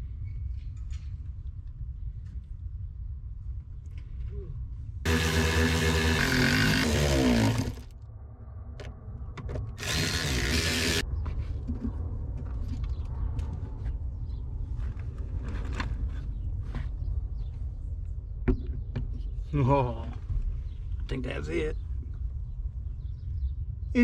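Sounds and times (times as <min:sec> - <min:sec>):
power tool running: 0:05.1 - 0:07.9, 0:09.8 - 0:11.0.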